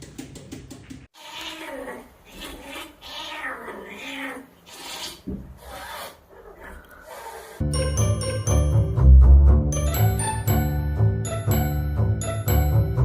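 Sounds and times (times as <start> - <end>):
cat meowing: 1.2 - 7.6.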